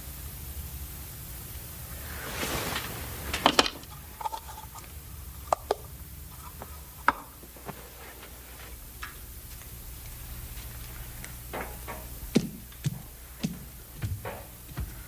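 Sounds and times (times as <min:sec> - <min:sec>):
low steady hum: 0:00.0 - 0:15.0
sharp knocks and clicks: 0:11.6 - 0:14.5.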